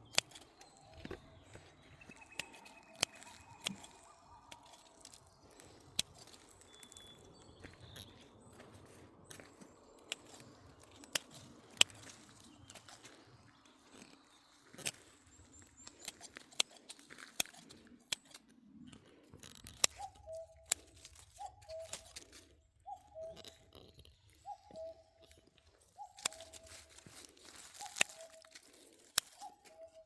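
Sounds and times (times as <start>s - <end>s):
sharp clicks or snips: 2.1s - 6.8s, 10.0s - 13.0s.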